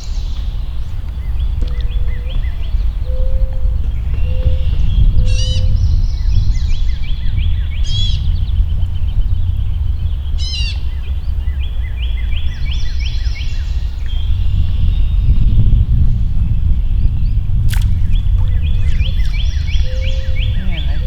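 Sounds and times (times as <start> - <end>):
birds singing: 0.0 - 21.0
loud low rumble: 17.6 - 21.0.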